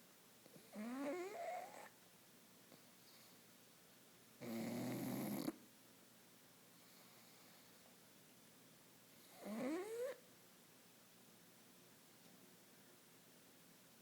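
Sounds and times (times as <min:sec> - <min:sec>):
dog snoring: 0:00.5 - 0:02.0, 0:04.4 - 0:05.6, 0:09.2 - 0:10.2.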